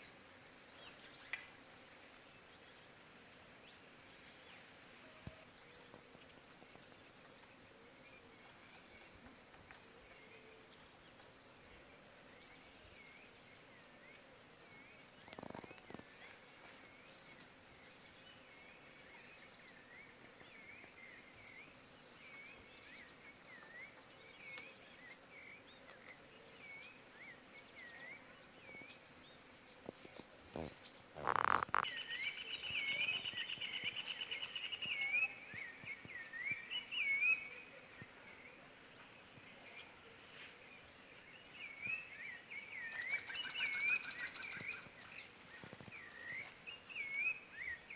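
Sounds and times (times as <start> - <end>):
high-pitched insect drone: 29.8 - 37.7.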